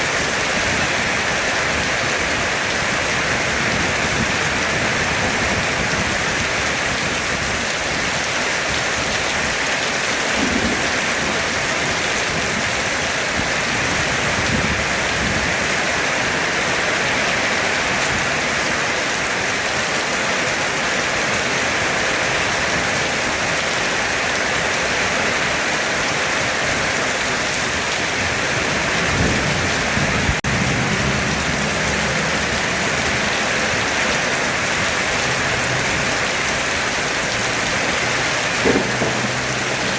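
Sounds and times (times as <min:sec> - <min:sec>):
heavy rain falling: 0:00.0 - 0:39.9
thunder rumbling: 0:08.8 - 0:15.5, 0:28.1 - 0:39.9
sharp thunder crack: 0:10.2 - 0:12.4, 0:38.6 - 0:39.9.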